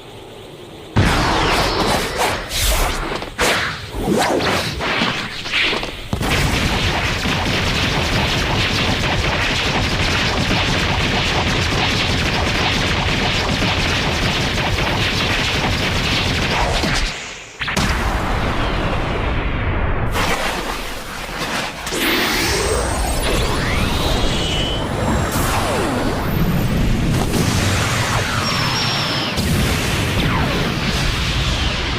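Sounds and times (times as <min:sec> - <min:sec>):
loud rumbling blast: 0:00.9 - 0:03.4.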